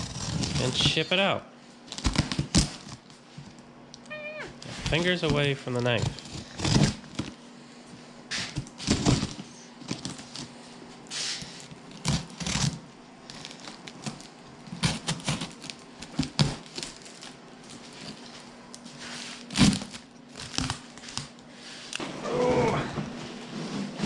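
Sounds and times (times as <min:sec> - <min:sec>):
knife cutting cardboard: 0:00.0 - 0:00.8, 0:05.9 - 0:07.1, 0:14.7 - 0:16.6.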